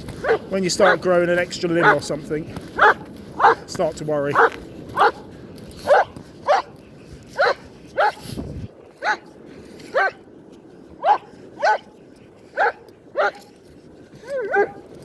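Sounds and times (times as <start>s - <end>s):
dog barking: 0.2s - 1.1s, 1.8s - 2.1s, 2.8s - 3.7s, 4.4s - 6.7s, 7.4s - 8.2s, 9.0s - 9.3s, 9.9s - 10.2s, 11.0s - 11.9s, 12.6s - 13.5s, 14.3s - 14.8s.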